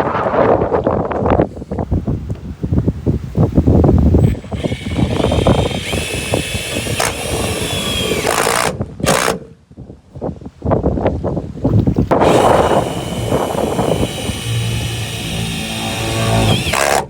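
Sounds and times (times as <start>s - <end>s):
wind buffeting microphone: 0.0s - 17.0s
cordless drill motor whining: 4.2s - 9.3s, 12.2s - 17.0s
drill trigger blips: 4.2s - 9.4s, 12.1s - 17.0s.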